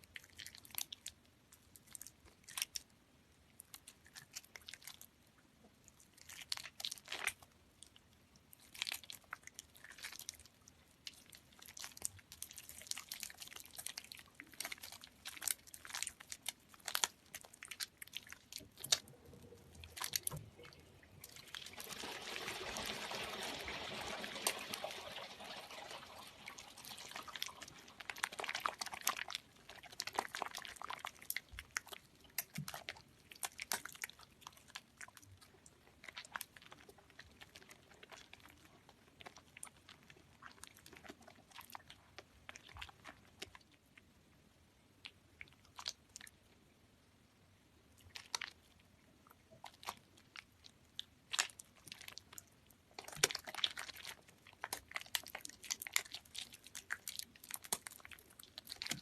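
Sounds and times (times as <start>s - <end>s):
wet soap squishing: 0.0s - 46.8s, 47.4s - 59.0s.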